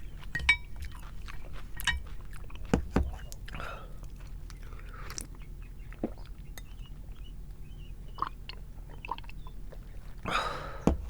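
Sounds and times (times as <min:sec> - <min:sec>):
chewing noodles: 0:00.0 - 0:10.5
wet mouth clicks: 0:08.2 - 0:09.8.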